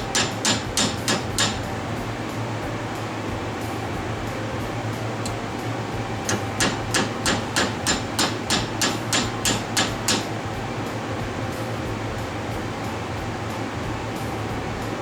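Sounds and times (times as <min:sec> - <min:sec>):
hammer beating metal sheet: 0:00.0 - 0:02.2, 0:05.2 - 0:11.3
steady low hum: 0:00.0 - 0:15.0.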